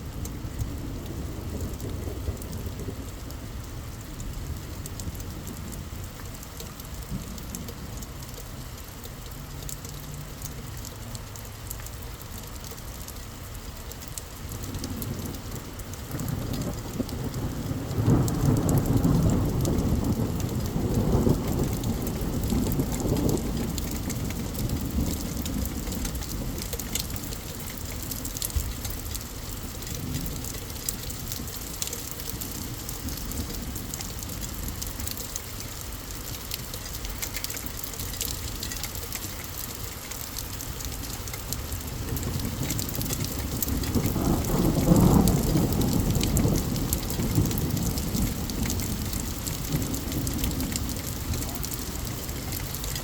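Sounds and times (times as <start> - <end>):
rain falling: 0.0 - 53.0
raindrops ticking: 0.0 - 53.0
thunder rumbling: 0.3 - 3.5, 14.6 - 35.4, 40.8 - 53.0.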